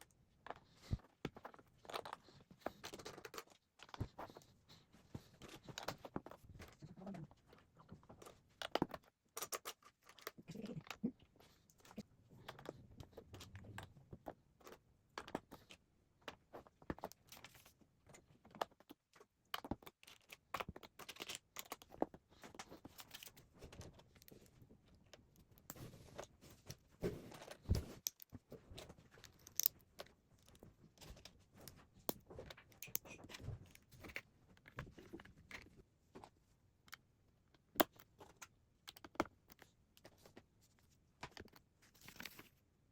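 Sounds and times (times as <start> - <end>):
plastic bricks clicking: 29.3 - 30.1.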